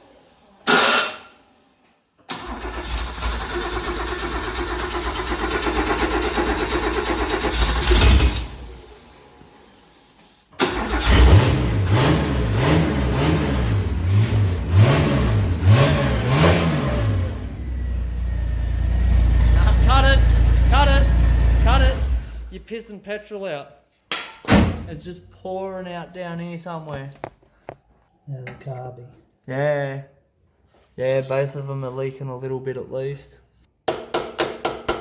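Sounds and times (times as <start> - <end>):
car engine revving and idling: 4.1 - 8.9, 10.8 - 22.5.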